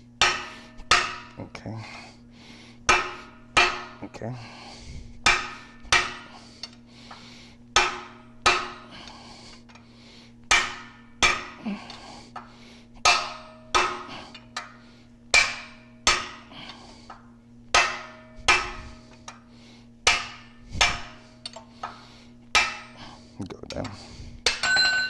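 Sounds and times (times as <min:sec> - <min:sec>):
hammer striking steel rod: 0:00.2 - 0:01.4, 0:02.9 - 0:04.0, 0:05.2 - 0:06.3, 0:07.8 - 0:08.9, 0:10.5 - 0:11.6, 0:12.4 - 0:16.5, 0:17.1 - 0:19.4, 0:20.0 - 0:23.0, 0:24.4 - 0:25.0.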